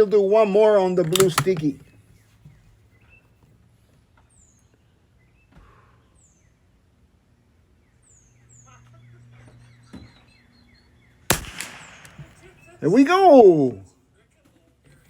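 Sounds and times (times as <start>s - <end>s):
bird chirping: 0.4s - 3.5s, 7.6s - 13.8s.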